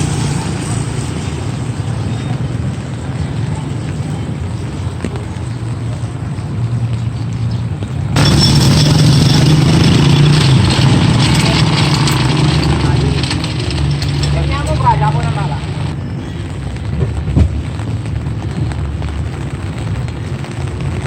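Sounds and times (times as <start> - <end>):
rain hissing: 0.0 - 21.0
vehicle engine running: 8.2 - 16.0.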